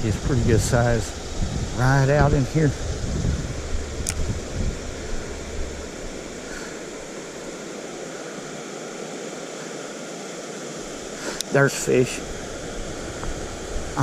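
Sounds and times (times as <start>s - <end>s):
low rumble: 0.0s - 7.6s
creek water flowing: 0.0s - 14.0s.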